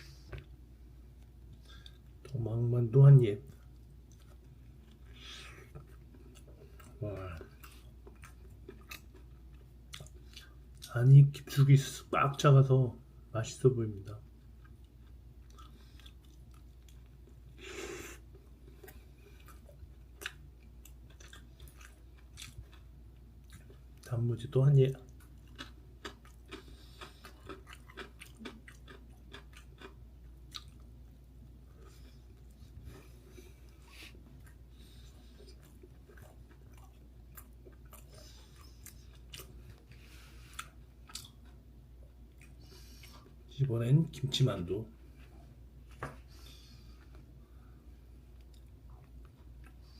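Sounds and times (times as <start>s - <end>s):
soft chewing: 0.0s - 2.4s, 3.4s - 12.1s, 14.2s - 24.2s, 24.8s - 43.5s, 44.9s - 49.9s.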